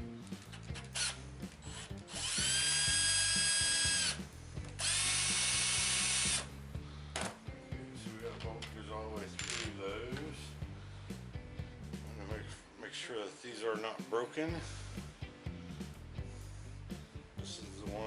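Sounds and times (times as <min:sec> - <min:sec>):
cordless drill whining: 0:00.8 - 0:06.5.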